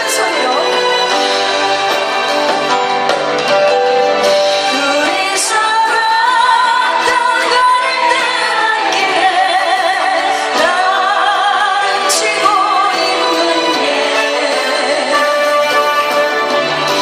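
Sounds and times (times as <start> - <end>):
slow ballad melody: 0.0 - 7.0.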